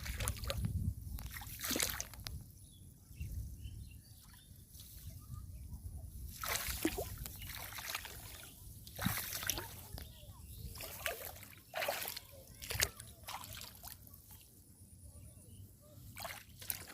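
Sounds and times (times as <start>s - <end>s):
water sloshing against boat: 0.0s - 2.3s, 6.3s - 14.4s
water splash: 1.2s - 2.2s, 6.3s - 9.8s, 10.8s - 13.9s, 16.2s - 16.9s.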